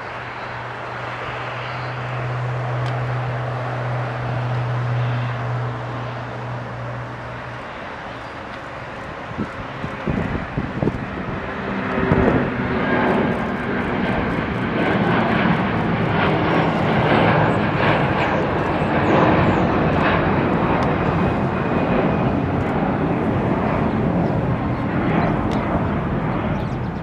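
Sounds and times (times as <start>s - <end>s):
jet engines at high power: 0.0s - 27.0s.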